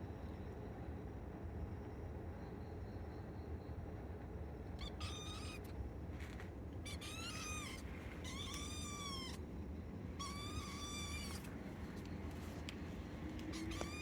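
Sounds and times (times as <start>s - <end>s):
kitten meowing: 4.8s - 5.6s, 6.9s - 9.4s, 10.2s - 11.5s, 13.4s - 14.0s.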